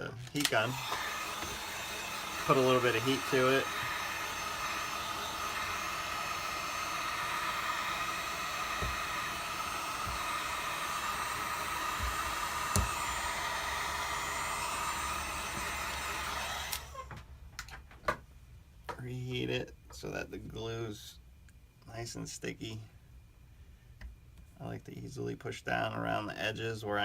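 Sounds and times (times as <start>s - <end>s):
heat gun blowing: 0.4s - 17.1s.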